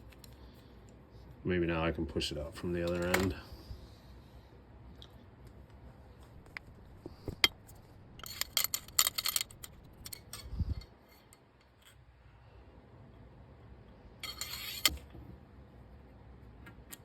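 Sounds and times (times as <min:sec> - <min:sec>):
metallic clicks and scraping: 0:06.5 - 0:12.0, 0:14.2 - 0:15.2.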